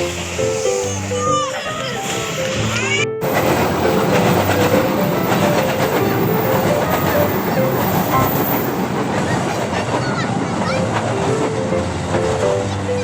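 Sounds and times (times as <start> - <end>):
train wheels clattering on rails: 3.2 - 13.0.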